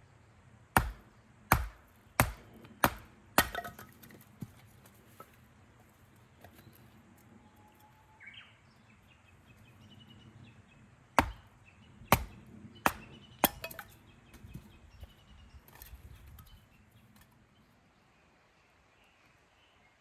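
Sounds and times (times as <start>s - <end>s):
wood being chopped: 0.8s - 5.4s, 11.2s - 14.7s
birds chirping faintly: 4.4s - 20.0s.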